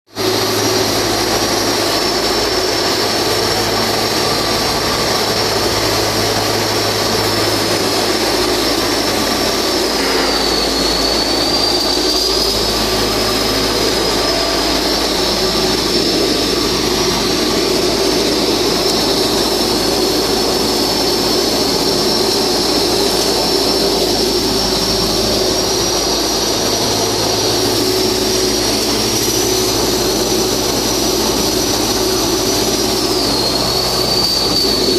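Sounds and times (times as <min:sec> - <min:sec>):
high whine: 0:00.1 - 0:34.9
low hum: 0:00.2 - 0:34.9
welding hissing roar: 0:00.2 - 0:34.9.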